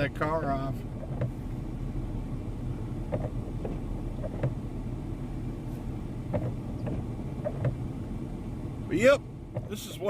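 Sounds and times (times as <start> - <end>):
vehicle engine idling: 0.0 - 10.0
faint irregular clicks: 3.0 - 4.6, 6.2 - 7.8, 9.5 - 9.8.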